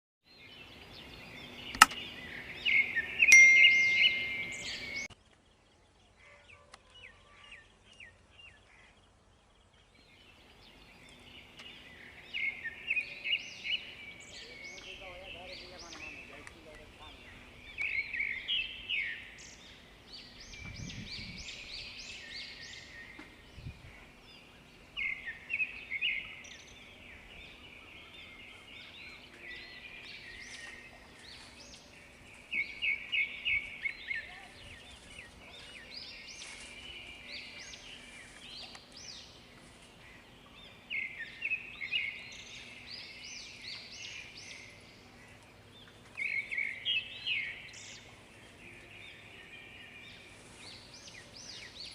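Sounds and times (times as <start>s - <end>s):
soft bird chirping: 0.6s - 19.8s
bird singing high notes: 2.7s - 5.1s.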